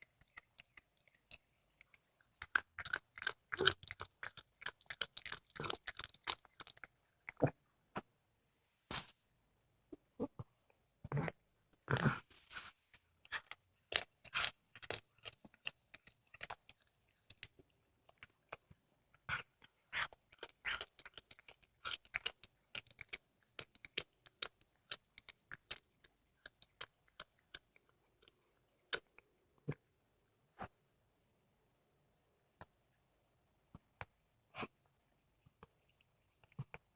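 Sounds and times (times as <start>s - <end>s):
cat chewing and crunching: 0.0s - 7.5s, 11.1s - 29.4s, 35.4s - 36.9s.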